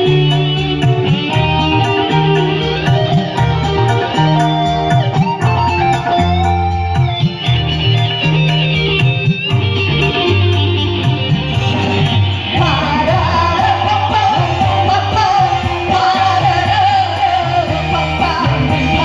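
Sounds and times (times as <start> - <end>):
guitar-led band playing: 0.0 - 19.0
hoarse person singing: 12.4 - 19.0.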